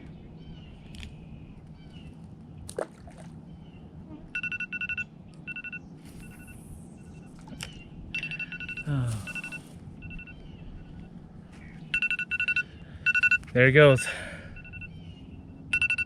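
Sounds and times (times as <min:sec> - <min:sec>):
high-pitched electronic beeping: 0:04.4 - 0:07.3, 0:08.1 - 0:10.4, 0:11.9 - 0:13.4, 0:14.5 - 0:16.0.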